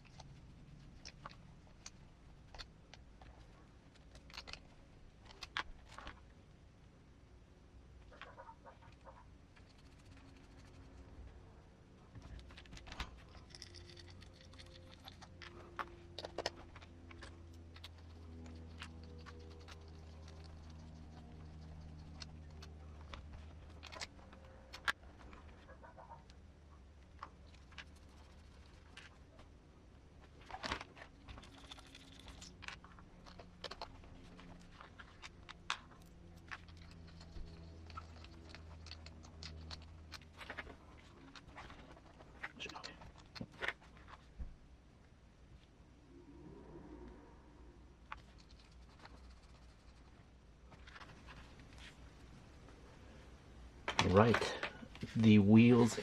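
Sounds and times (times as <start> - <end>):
small plastic and metal parts clicking: 0.0 - 6.2
faint low hum: 0.0 - 56.0.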